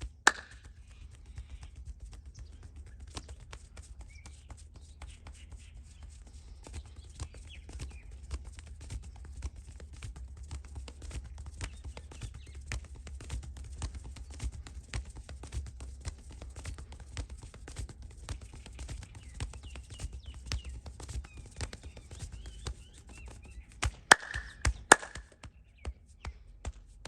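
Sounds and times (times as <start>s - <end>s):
hands tapping and slapping body: 0.0s - 27.0s.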